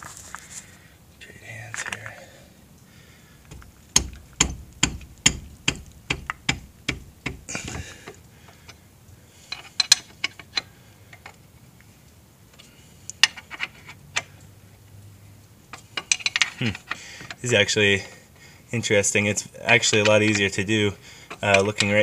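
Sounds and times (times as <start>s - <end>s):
wrench clicking: 16.0s - 17.4s.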